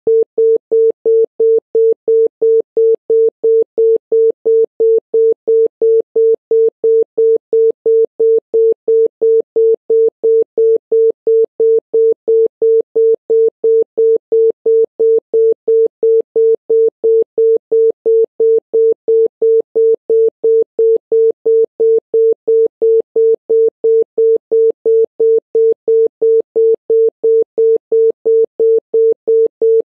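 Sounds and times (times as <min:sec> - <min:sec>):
telephone busy tone beeping: 0:00.1 - 0:29.8.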